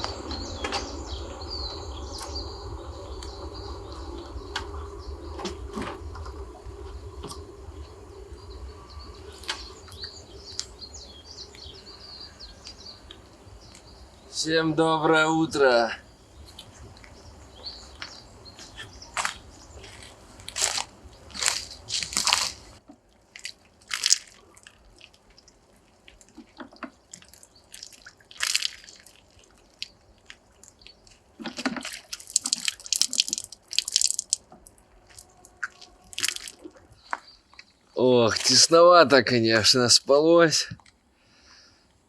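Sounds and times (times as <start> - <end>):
rain drips and taps: 0.0 - 2.4, 3.1 - 8.0, 8.9 - 10.8, 20.4 - 39.3.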